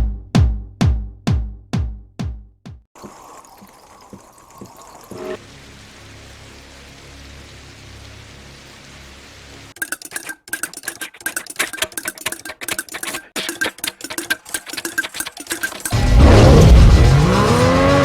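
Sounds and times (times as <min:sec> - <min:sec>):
fast uneven clicking and clattering: 0:09.8 - 0:16.6.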